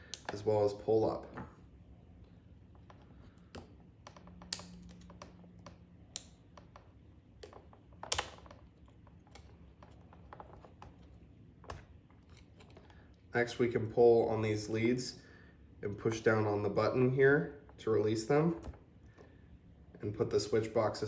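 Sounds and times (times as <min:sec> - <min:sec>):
small plastic clicks and taps: 0:02.8 - 0:12.9.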